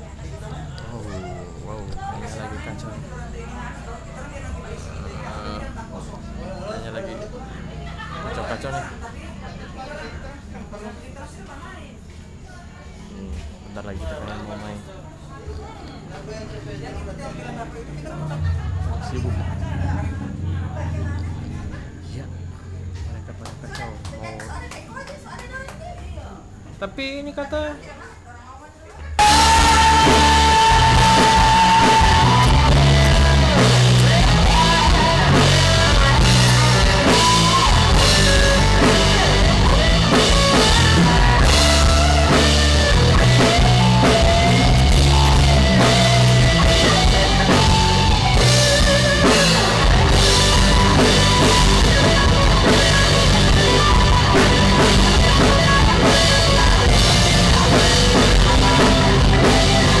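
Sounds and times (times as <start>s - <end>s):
drums playing a steady beat: 29.2s - 60.0s
loud rock music: 29.2s - 60.0s.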